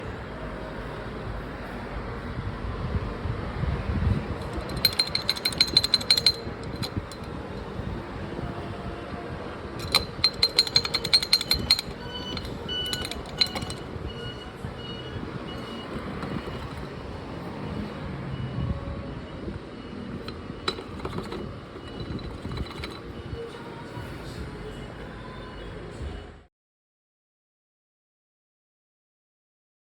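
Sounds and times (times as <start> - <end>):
rapid metallic clattering: 4.3 - 7.8, 9.8 - 17.7, 20.1 - 23.5.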